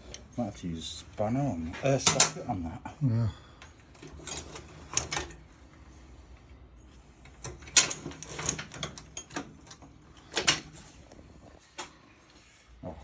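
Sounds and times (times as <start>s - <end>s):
metal tools clinking: 7.6s - 11.0s.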